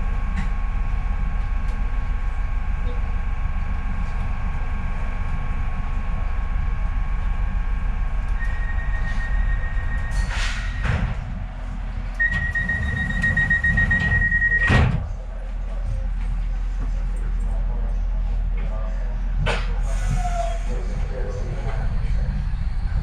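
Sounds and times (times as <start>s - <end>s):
train rumbling: 0.0s - 23.0s
train doors whooshing: 8.4s - 15.1s
high warning tone: 12.2s - 14.7s.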